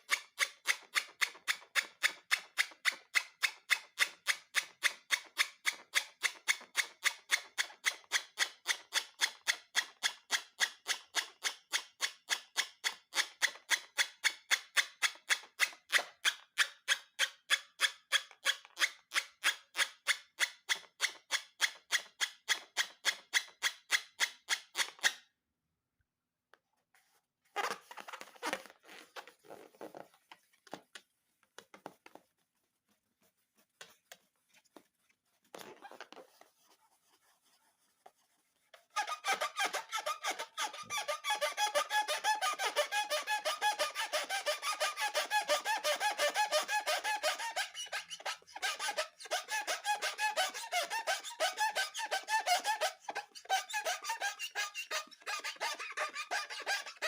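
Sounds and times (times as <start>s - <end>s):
rubber balloon squeaking: 27.5s - 30.3s, 35.5s - 36.4s, 38.8s - 57.0s.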